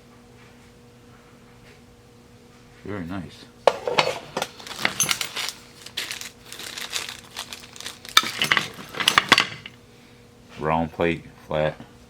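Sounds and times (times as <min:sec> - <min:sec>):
small metal parts clinking: 0:03.7 - 0:09.8.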